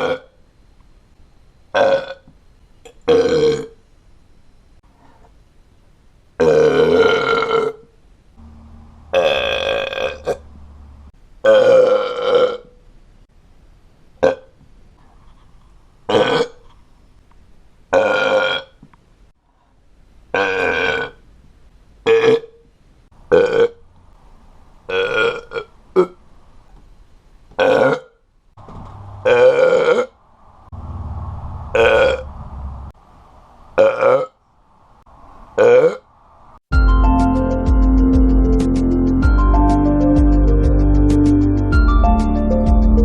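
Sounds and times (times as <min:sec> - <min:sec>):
man belching loudly: 0:00.0 - 0:00.3, 0:01.8 - 0:02.3, 0:03.0 - 0:03.8, 0:06.4 - 0:07.8, 0:09.1 - 0:10.4, 0:11.4 - 0:12.7, 0:14.2 - 0:14.5, 0:16.1 - 0:16.6, 0:17.9 - 0:18.7, 0:20.4 - 0:21.2, 0:22.1 - 0:22.6, 0:23.3 - 0:23.8, 0:24.9 - 0:26.2, 0:27.6 - 0:28.2, 0:29.2 - 0:30.1, 0:31.8 - 0:32.2, 0:33.8 - 0:34.4, 0:35.6 - 0:36.0.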